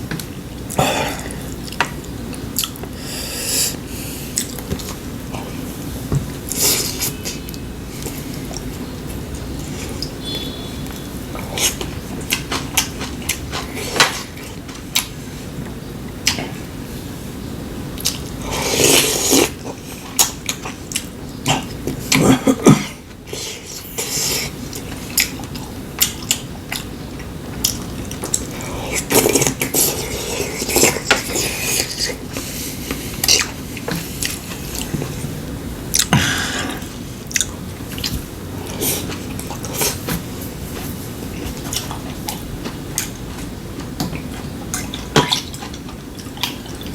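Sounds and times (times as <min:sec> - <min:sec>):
chewing: 0:00.2 - 0:03.0, 0:10.9 - 0:16.7, 0:18.0 - 0:22.3, 0:23.3 - 0:46.9.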